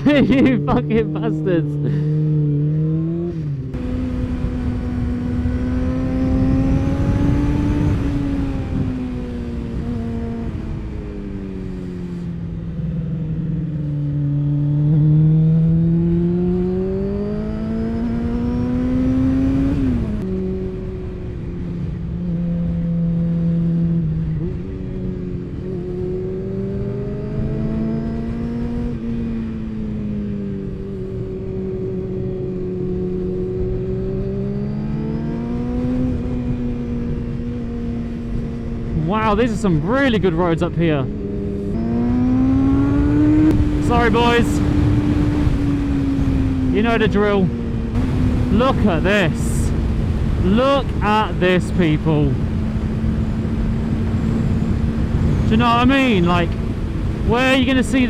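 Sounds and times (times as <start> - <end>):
motorcycle engine revving: 0.0 - 21.2, 22.1 - 39.2, 41.0 - 58.0
wind on microphone: 43.3 - 46.7, 52.3 - 55.6.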